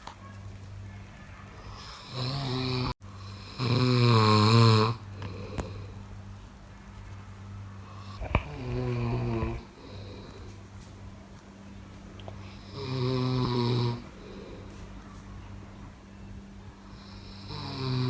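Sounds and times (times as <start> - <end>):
faint low hum: 0.0 - 18.0
person snoring: 1.8 - 6.0, 7.9 - 10.6, 12.4 - 14.7, 17.0 - 18.0.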